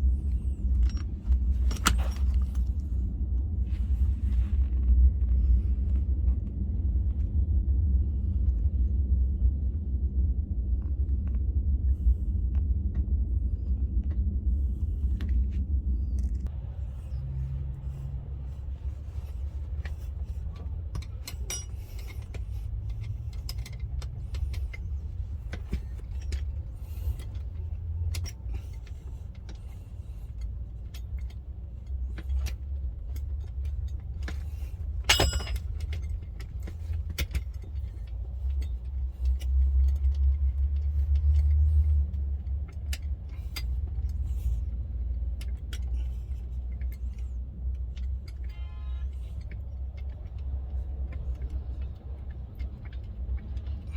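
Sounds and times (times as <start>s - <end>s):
low steady rumble: 0.0s - 53.9s
metallic clinks of hand tools: 19.2s - 28.9s, 30.8s - 40.4s
sharp ringing metal clink: 21.0s - 22.2s, 35.0s - 36.0s.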